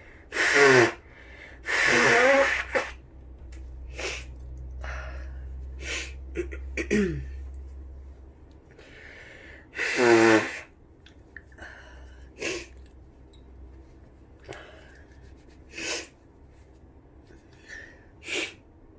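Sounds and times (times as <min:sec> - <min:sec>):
person sneezing: 0:00.3 - 0:01.0, 0:01.6 - 0:03.0, 0:09.8 - 0:10.7
breathy sounds: 0:03.8 - 0:06.3.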